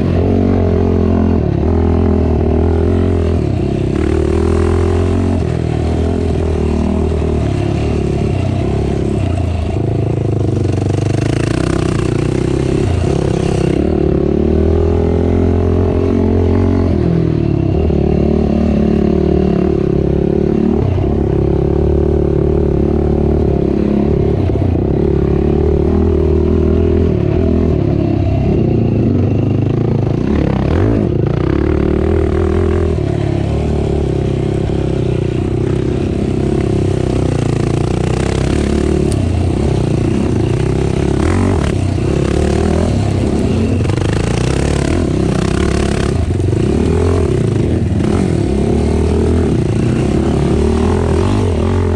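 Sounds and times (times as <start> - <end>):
atv engine revving: 0.0 - 51.9.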